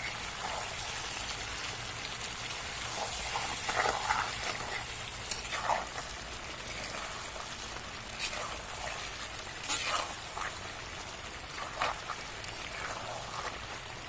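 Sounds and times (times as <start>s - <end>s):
meat sizzling in a pan: 0.0s - 14.0s
pan scrapes and clatters: 8.2s - 10.6s.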